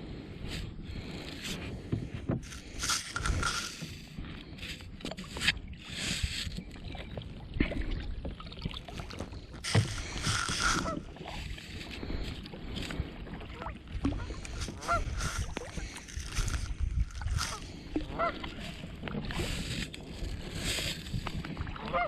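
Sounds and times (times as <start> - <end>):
kayak paddle splashing: 0.4 - 22.0
geese honking: 10.6 - 11.1, 14.6 - 15.4, 17.5 - 18.4, 21.8 - 22.0.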